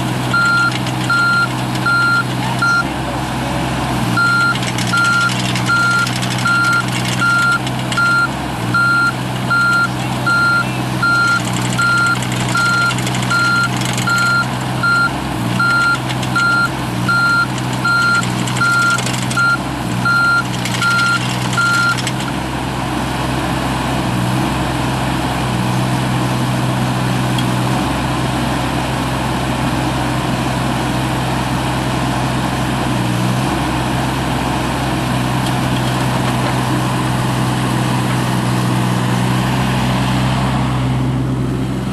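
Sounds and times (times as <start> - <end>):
excavator diesel engine running: 0.0 - 41.9
warning alarm beeping: 0.3 - 2.9, 4.2 - 22.0.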